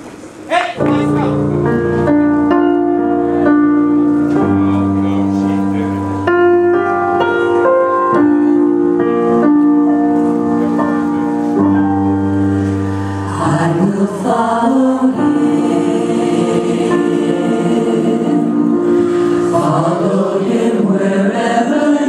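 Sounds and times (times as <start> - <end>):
held keyboard chords: 0.8 - 22.0
gospel choir singing: 13.0 - 22.0.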